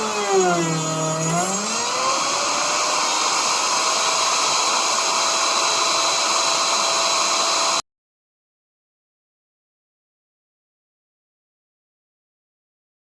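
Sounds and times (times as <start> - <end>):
electric power tool motor whining: 0.0 - 7.8.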